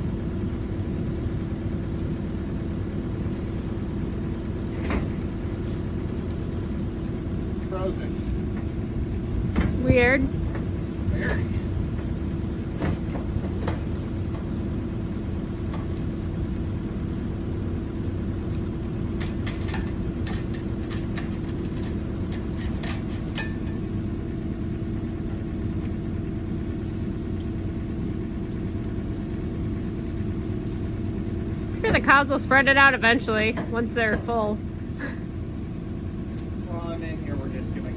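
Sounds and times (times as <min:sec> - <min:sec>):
loader engine running: 0:00.0 - 0:37.9
sharp clicks and knocks: 0:19.2 - 0:23.8.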